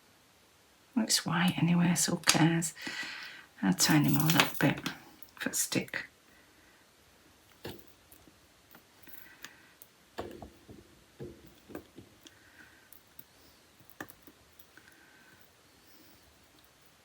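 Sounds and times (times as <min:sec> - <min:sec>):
small tools clicking and tapping: 0:07.5 - 0:15.5.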